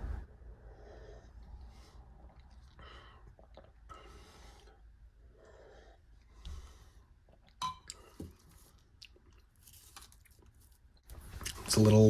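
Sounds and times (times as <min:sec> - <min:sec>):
soft breaths: 0:00.1 - 0:08.8
person sipping a drink: 0:01.4 - 0:04.8, 0:07.3 - 0:10.3.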